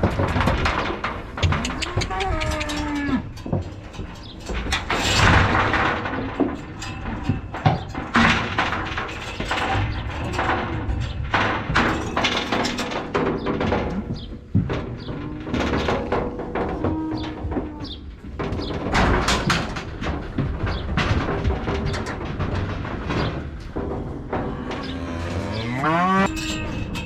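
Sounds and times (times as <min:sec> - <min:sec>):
knocks and thumps: 0:00.0 - 0:27.0
cow mooing: 0:01.7 - 0:03.3, 0:24.5 - 0:26.6.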